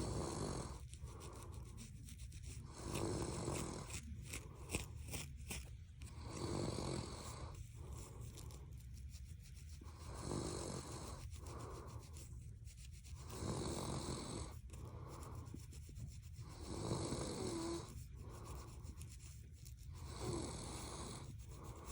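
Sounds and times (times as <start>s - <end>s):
person snoring: 0.0s - 1.3s, 2.7s - 3.9s, 6.1s - 7.5s, 13.3s - 14.5s, 16.6s - 17.9s, 20.0s - 21.9s
fingernails scratching scalp: 0.0s - 21.9s.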